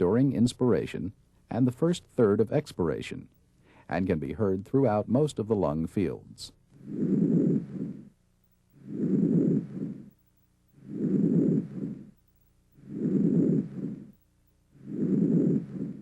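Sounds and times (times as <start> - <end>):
soft breathing: 3.5 - 4.0, 6.8 - 16.0.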